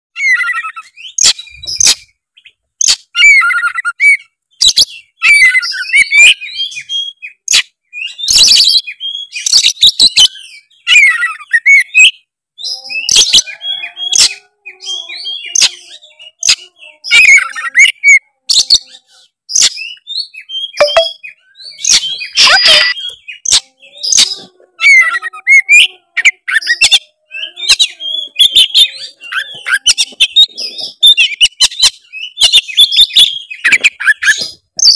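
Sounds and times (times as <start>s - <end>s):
bird singing whistles and trills: 0.2s - 34.9s.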